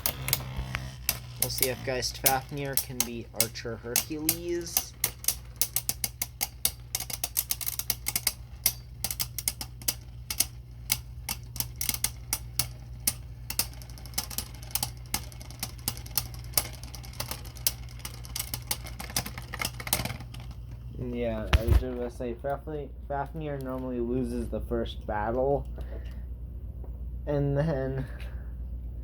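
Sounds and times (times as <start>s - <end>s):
spinning tops clacking: 0.0s - 21.1s
low hum: 0.0s - 29.0s.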